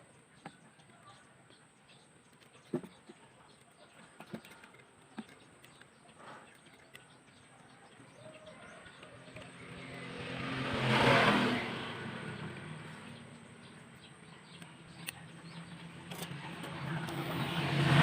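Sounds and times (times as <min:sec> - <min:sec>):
vehicle passing by: 0:08.1 - 0:18.0.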